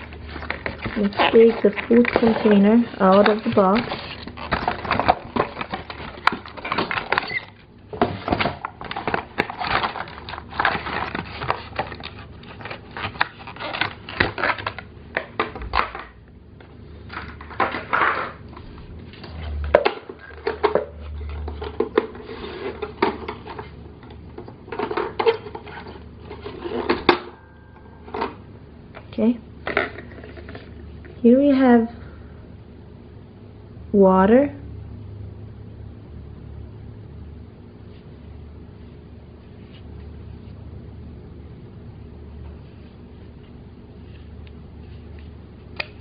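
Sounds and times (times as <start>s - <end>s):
plastic toy pieces clattering: 0.0s - 7.4s.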